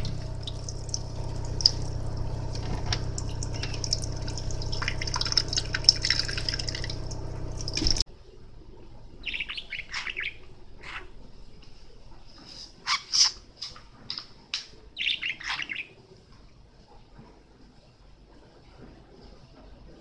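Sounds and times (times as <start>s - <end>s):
running splashing water: 0.0s - 8.0s
budgerigar chirping: 9.2s - 11.1s, 15.0s - 16.0s.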